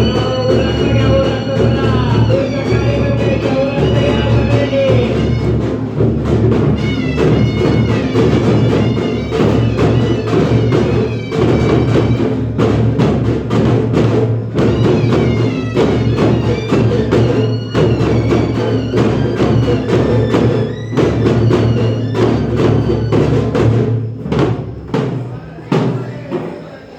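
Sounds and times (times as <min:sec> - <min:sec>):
high bending melody: 0:00.0 - 0:05.6
fast dense drumming: 0:00.0 - 0:26.6.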